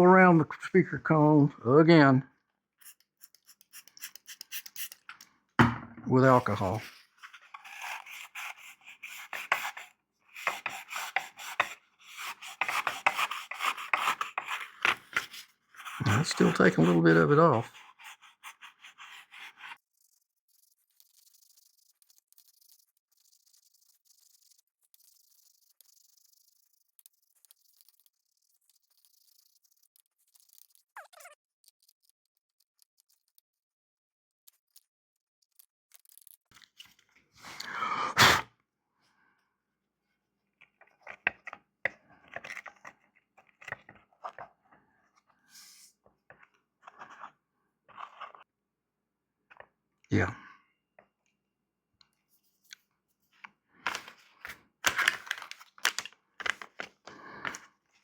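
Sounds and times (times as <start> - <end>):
scratching rub: 2.8 - 5.1, 6.2 - 33.4
hands clicking and scraping: 2.8 - 5.3, 31.6 - 33.6, 40.6 - 44.5
tiny irregular ticks: 24.9 - 33.7.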